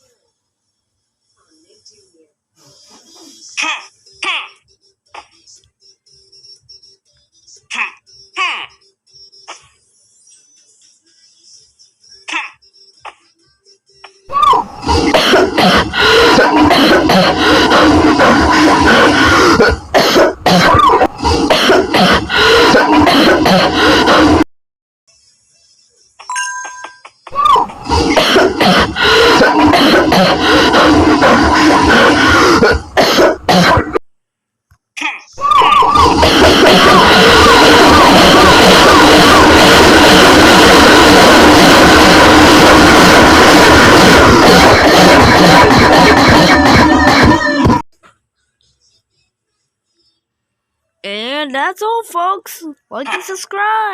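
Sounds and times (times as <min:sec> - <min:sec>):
harsh coughing and throat-clearing: 0:14.5 - 0:24.5, 0:27.6 - 0:34.0, 0:35.0 - 0:47.8
loud music: 0:36.0 - 0:47.8.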